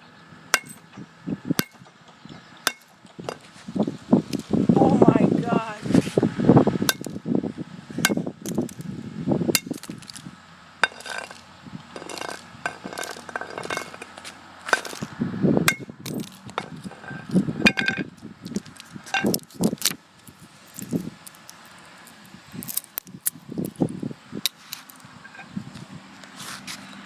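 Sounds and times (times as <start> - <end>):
broken pieces clinking: 0.6 - 0.9, 1.6 - 1.9, 2.7 - 3.5, 6.9 - 7.2, 8.1 - 8.9, 9.6 - 15.1, 15.7 - 25.4.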